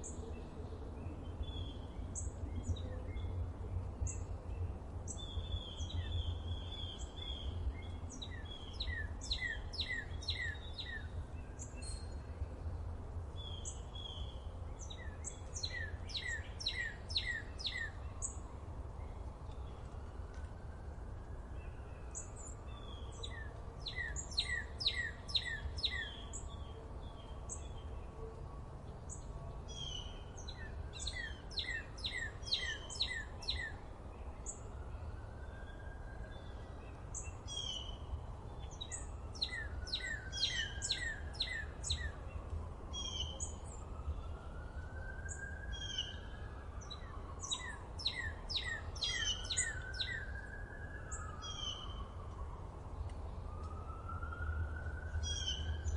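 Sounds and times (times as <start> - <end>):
songbirds singing: 0.0 - 55.9
rising and falling bird whistle: 38.8 - 42.1, 45.2 - 52.1.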